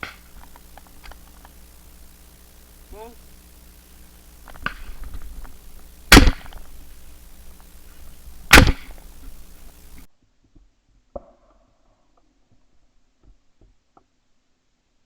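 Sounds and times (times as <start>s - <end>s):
shotgun shots: 0.0s - 10.1s.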